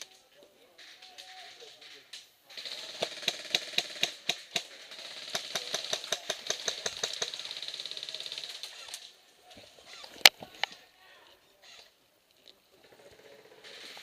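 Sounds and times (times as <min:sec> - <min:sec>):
airsoft guns firing: 0:02.6 - 0:08.4.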